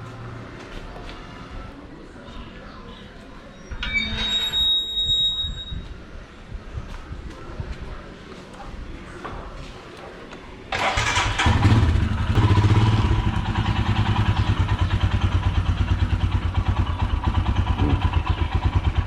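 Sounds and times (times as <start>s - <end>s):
motorcycle engine starting and idling: 10.7s - 19.0s.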